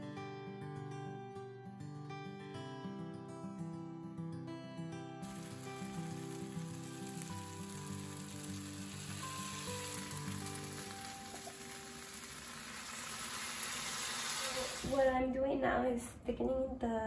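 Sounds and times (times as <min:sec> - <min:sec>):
acoustic guitar music: 0:00.0 - 0:14.7
jelly sizzling and bubbling: 0:05.2 - 0:15.2.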